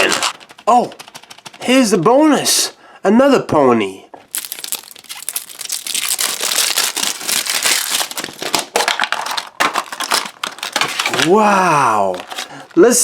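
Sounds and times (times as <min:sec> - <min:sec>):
plastic packaging crinkling: 0:00.0 - 0:01.6, 0:04.3 - 0:12.8.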